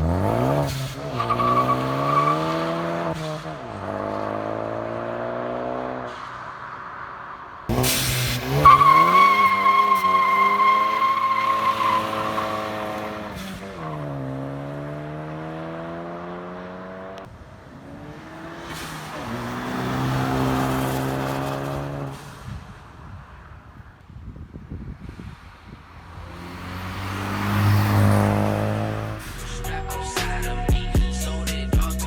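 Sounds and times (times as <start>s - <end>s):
car engine accelerating: 0.0s - 22.8s, 26.0s - 30.7s
tyres squealing: 8.1s - 13.4s.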